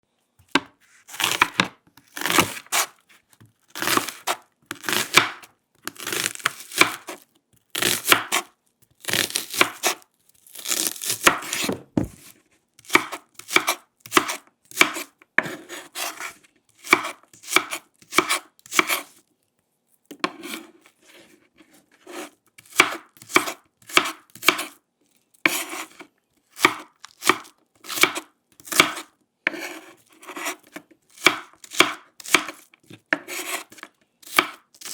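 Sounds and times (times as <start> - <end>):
knife chopping on wooden board: 0.5 - 2.9, 3.8 - 5.5, 6.1 - 7.2, 7.8 - 8.5, 9.1 - 10.0, 11.0 - 19.1, 20.2 - 20.7, 22.1 - 24.8, 25.4 - 26.0, 26.6 - 34.9.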